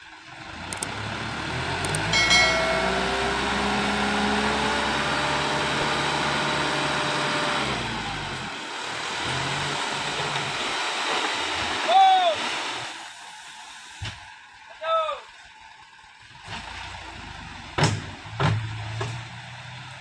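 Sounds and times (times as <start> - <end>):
dump truck diesel engine running: 0.0 - 11.0, 15.6 - 20.0.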